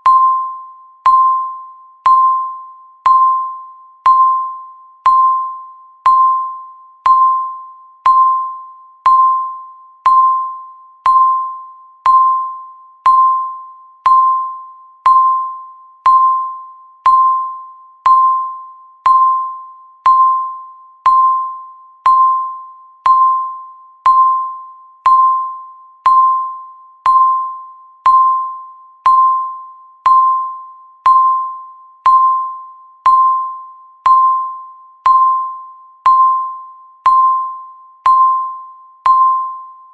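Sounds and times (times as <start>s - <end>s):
countdown timer beeps: 0.0s - 39.9s.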